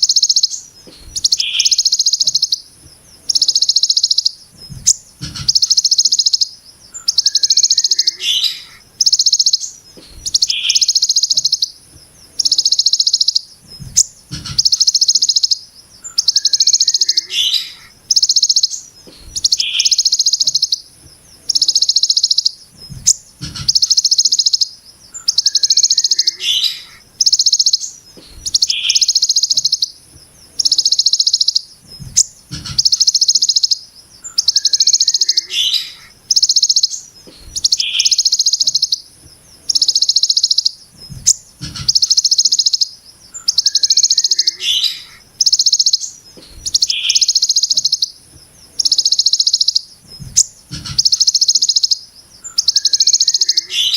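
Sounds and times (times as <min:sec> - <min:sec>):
bird singing buzzy trills: 0:00.0 - 0:53.9
dull low thumps: 0:04.5 - 0:05.6, 0:13.6 - 0:14.7, 0:22.7 - 0:23.8, 0:31.8 - 0:32.9, 0:41.0 - 0:42.0, 0:50.0 - 0:51.1.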